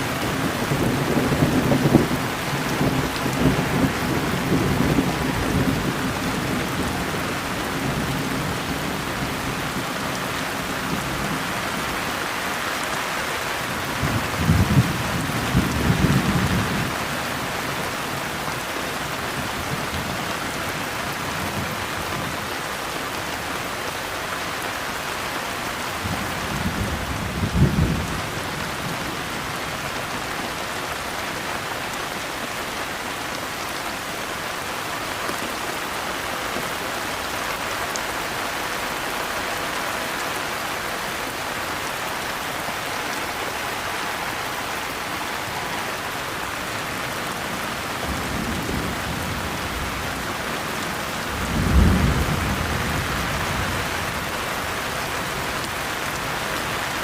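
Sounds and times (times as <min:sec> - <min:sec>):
steady rain falling: 0:00.0 - 0:57.0
thunder rumbling: 0:51.3 - 0:54.2.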